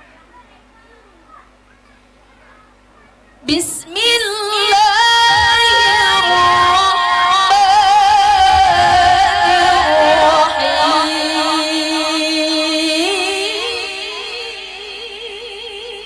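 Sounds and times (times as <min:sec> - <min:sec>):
woman reciting melodically: 0:03.2 - 0:16.0.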